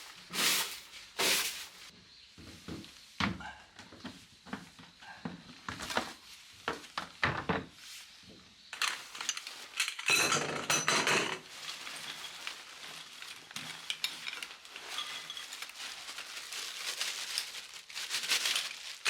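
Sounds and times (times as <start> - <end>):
rustling and clatter: 8.8 - 19.0.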